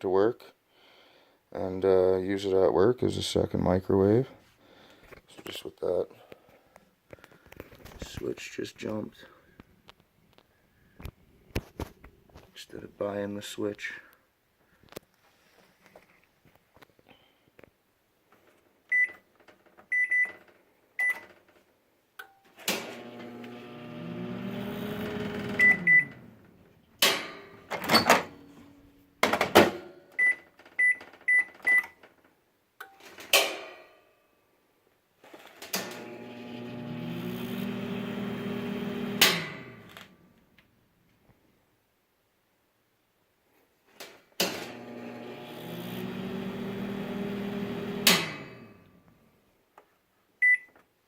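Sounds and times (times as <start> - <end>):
microwave keypad beeping: 19.9 - 20.4, 25.0 - 26.2, 30.2 - 32.0, 50.4 - 50.7
microwave oven humming: 22.7 - 26.5, 35.8 - 40.3, 44.5 - 49.0.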